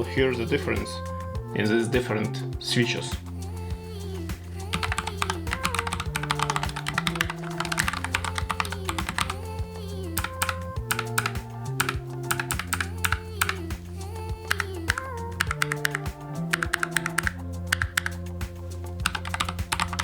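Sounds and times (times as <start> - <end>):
mechanical keyboard typing: 4.7 - 18.2, 19.0 - 20.0.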